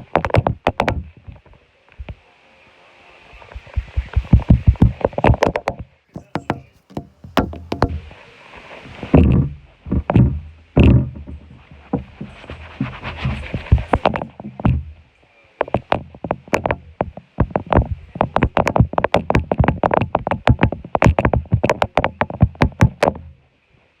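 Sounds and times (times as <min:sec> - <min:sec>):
rapid sharp knocks and clicks: 0:06.2 - 0:08.0.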